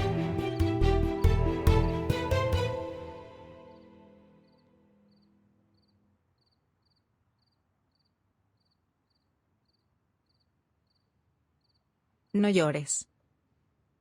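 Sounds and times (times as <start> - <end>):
background music: 0.0 - 4.9
cricket chirps: 4.4 - 11.9.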